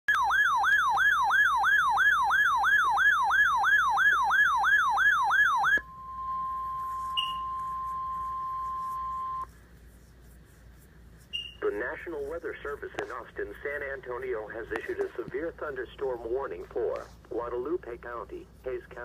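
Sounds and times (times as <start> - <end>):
electronic alarm sweeping down: 0.1 - 9.5
steady high alarm tone: 0.1 - 9.5.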